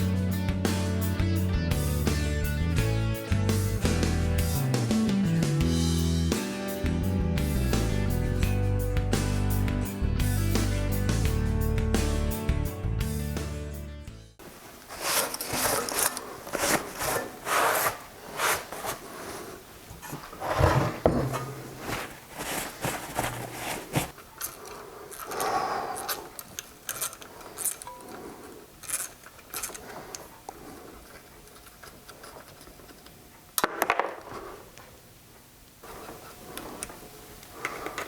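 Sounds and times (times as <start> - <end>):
heavy thump: 20.6 - 22.2.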